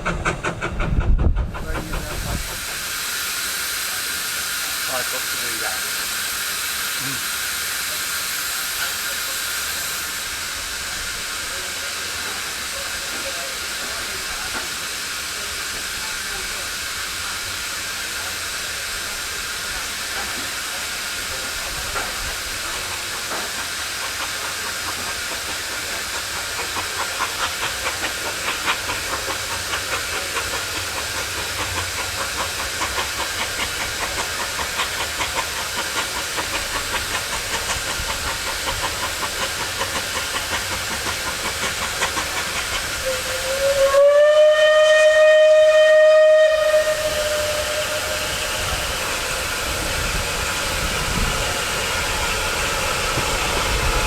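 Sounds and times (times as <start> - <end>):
steam hissing: 0.0 - 54.0
steam whistle blast: 43.0 - 48.8.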